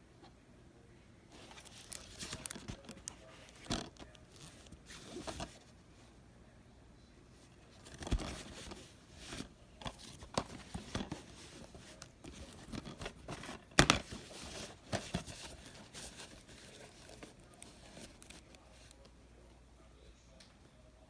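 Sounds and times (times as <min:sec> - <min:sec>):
rustling and clicking handling noise: 0:01.3 - 0:06.0, 0:07.4 - 0:19.2.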